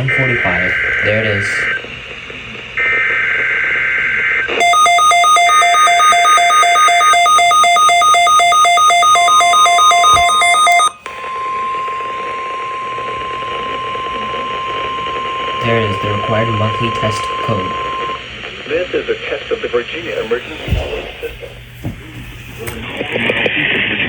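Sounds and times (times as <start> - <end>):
steady radio alert tone: 0.0 - 1.8, 4.5 - 18.2
rapid electronic alarm beeps: 4.5 - 18.2
two-tone data burst warble: 4.6 - 11.0.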